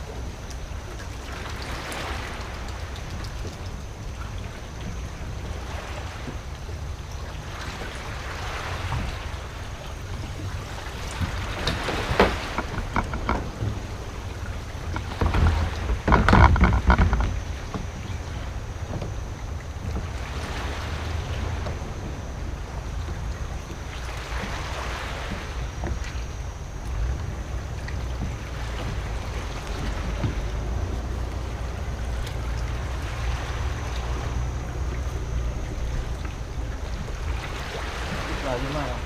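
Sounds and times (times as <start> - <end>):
water around a boat: 0.0 - 39.0
water splashes: 0.0 - 39.0
wind: 0.0 - 39.0
knocks on a boat: 8.7 - 9.4, 10.1 - 39.0.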